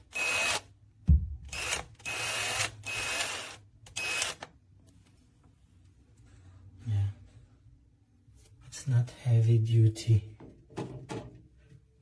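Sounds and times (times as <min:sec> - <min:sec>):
low thump: 0:01.0 - 0:01.5
cordless drill motor grinding: 0:01.6 - 0:04.4.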